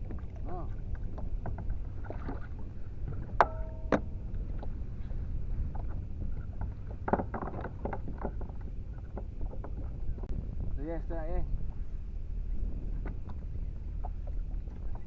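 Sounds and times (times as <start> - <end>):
low rumble of wind and water: 0.0 - 15.0
knocks on a boat: 7.0 - 8.4.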